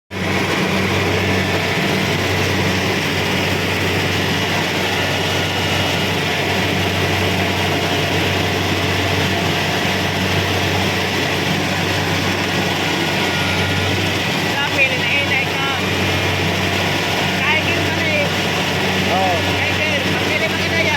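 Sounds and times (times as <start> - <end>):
combine harvester engine hum: 0.1 - 20.9.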